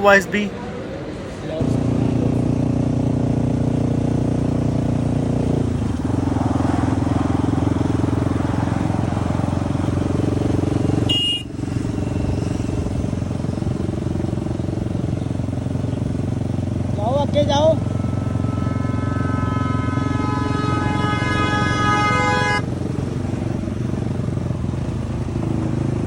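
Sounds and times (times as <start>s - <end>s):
motorcycle engine running: 1.6s - 26.0s.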